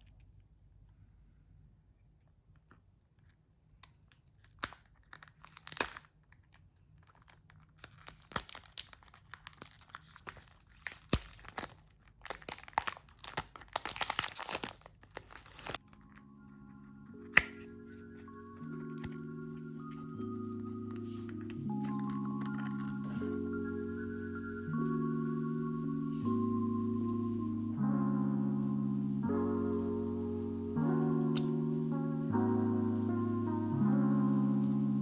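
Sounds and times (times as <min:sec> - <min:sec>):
packaging being torn and crinkled: 0:03.8 - 0:16.2, 0:20.9 - 0:23.3
soft music: 0:07.8 - 0:35.0.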